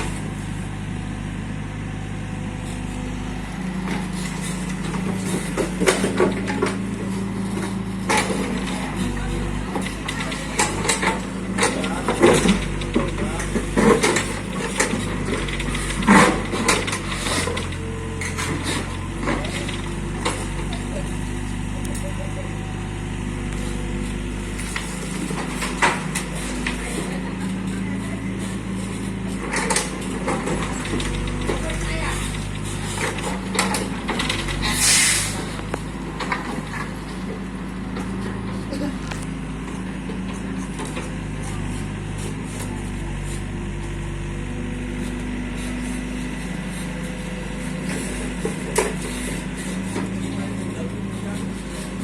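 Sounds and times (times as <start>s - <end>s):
diesel engine of heavy machinery: 0.0s - 52.0s
metal clunks and clatter: 3.7s - 21.2s, 28.8s - 41.6s
burst of hiss: 34.7s - 35.4s.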